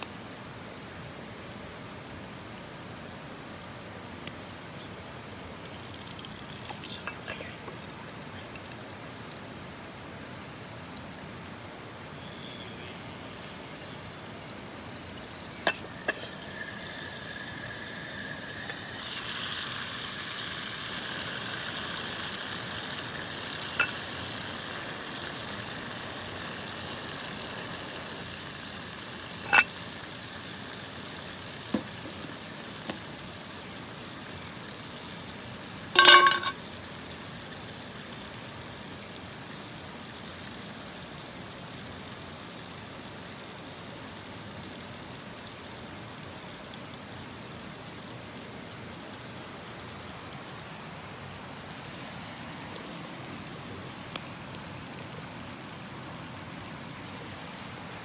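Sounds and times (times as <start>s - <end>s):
food sizzling in a pan: 5.6s - 9.1s, 12.2s - 41.2s.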